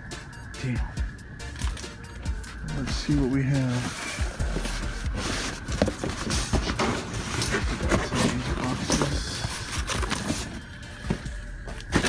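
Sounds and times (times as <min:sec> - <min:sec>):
cardboard rustling and crinkling: 0:02.8 - 0:12.0.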